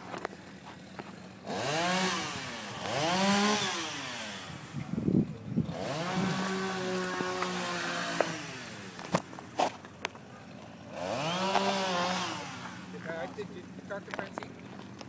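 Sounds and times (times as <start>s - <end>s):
chainsaw revving: 0.0s - 9.8s, 10.4s - 14.8s.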